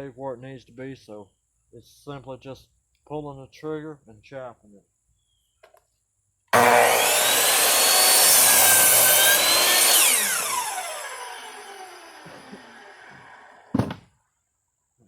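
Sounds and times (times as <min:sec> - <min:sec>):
saw blade spinning down: 0:06.6 - 0:13.8
electric saw cutting board: 0:06.6 - 0:13.9.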